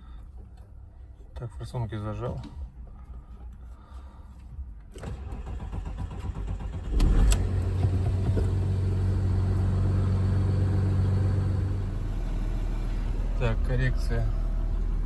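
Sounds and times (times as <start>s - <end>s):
starter motor cranking: 5.0s - 8.2s
diesel engine revving and idling: 5.3s - 15.0s.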